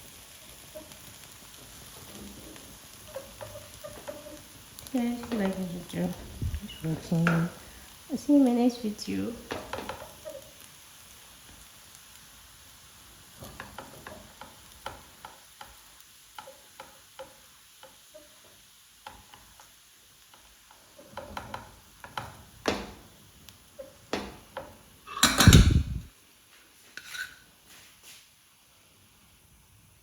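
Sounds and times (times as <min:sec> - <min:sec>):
spoon stirring in a pot: 0:02.9 - 0:06.2, 0:09.4 - 0:10.6, 0:13.3 - 0:22.9, 0:27.0 - 0:27.4.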